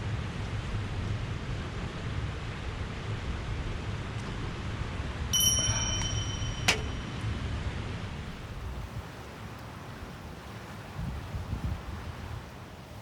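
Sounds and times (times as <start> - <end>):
low rumble of wind or water: 0.0 - 13.0
metal object clinking: 5.4 - 7.2.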